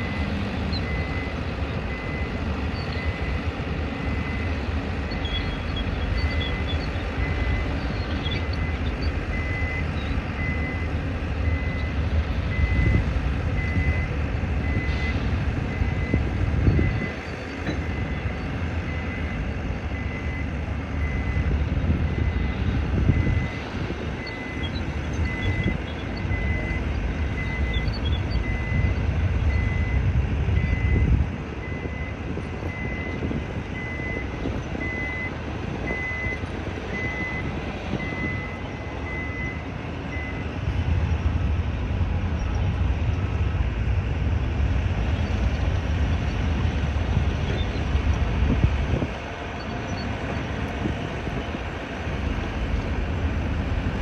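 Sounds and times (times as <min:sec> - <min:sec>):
reversing alarm beeping: 0:00.0 - 0:40.5
low heavy engine rumble: 0:00.0 - 0:54.0.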